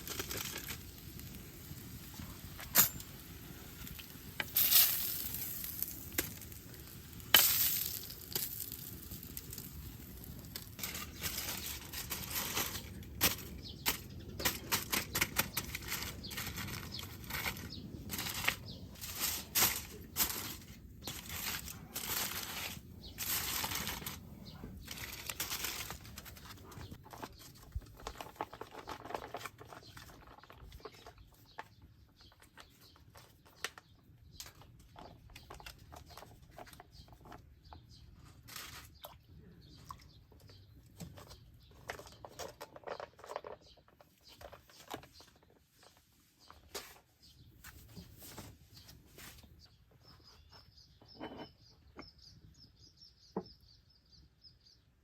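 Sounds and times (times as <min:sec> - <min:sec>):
rustling and crinkling: 0:00.0 - 0:51.4.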